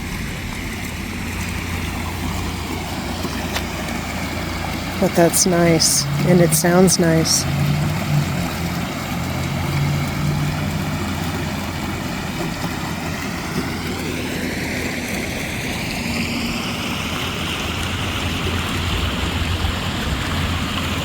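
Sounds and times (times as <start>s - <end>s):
creek water flowing: 0.0s - 21.0s
person speaking: 5.0s - 7.5s.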